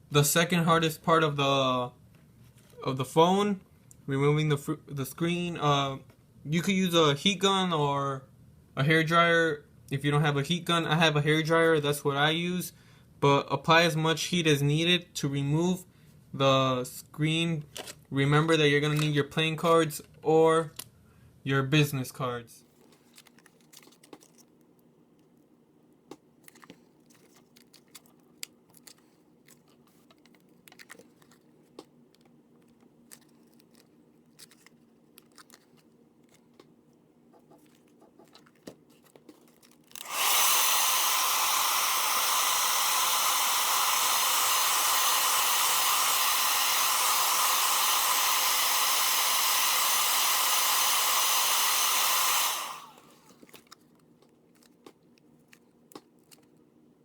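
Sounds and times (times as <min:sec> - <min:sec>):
faint clicks and taps: 0:22.7 - 0:39.9, 0:53.3 - 0:56.6
hair dryer blowing: 0:40.0 - 0:53.2.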